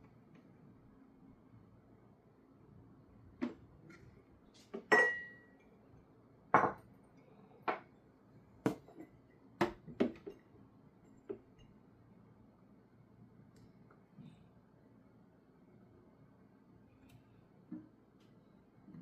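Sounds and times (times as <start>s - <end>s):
dishware clinking and knocking: 4.8s - 5.4s, 6.6s - 6.8s.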